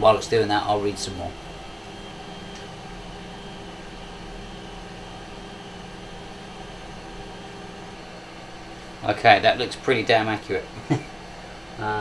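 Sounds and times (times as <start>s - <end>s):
faint motor hiss: 0.0s - 12.0s
printer mechanical hum: 0.0s - 12.0s.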